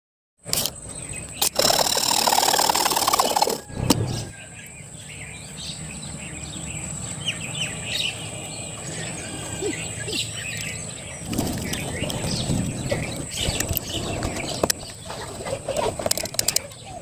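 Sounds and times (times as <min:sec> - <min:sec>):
sharp clicks: 0:00.5 - 0:04.1
loud harsh noise: 0:01.4 - 0:04.5.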